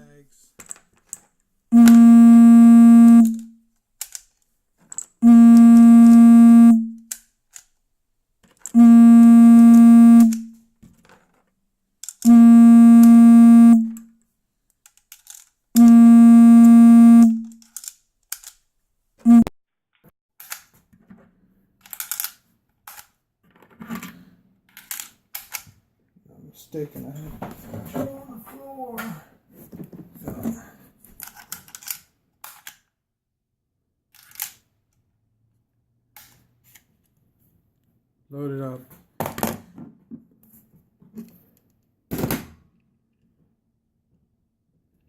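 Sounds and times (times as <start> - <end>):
phone vibrating on hard floor: 1.8 - 3.4, 5.2 - 7.0, 8.8 - 10.4, 12.3 - 14.0, 15.8 - 17.5.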